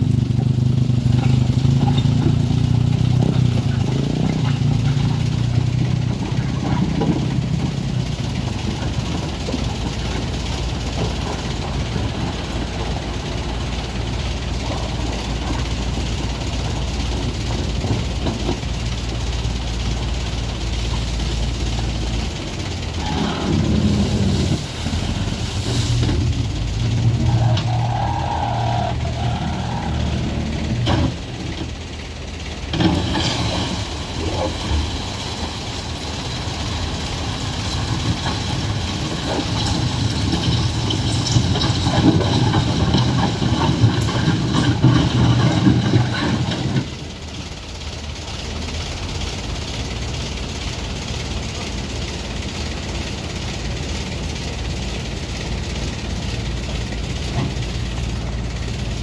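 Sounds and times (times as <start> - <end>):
vehicle engines rumbling: 0.0 - 59.0.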